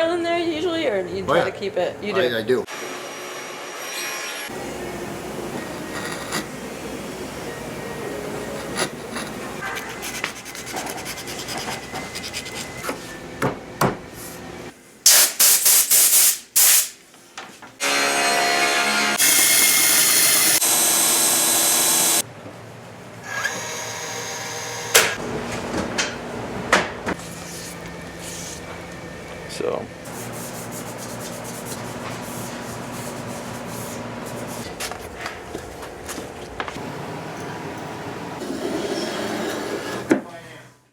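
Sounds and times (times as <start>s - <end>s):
power tool running: 17.8s - 22.2s.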